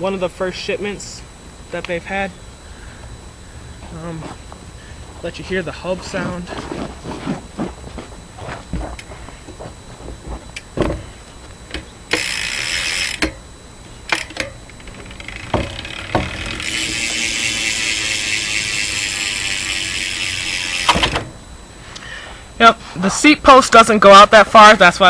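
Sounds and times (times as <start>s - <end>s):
bicycle hub ratcheting buzz: 11.4s - 22.2s.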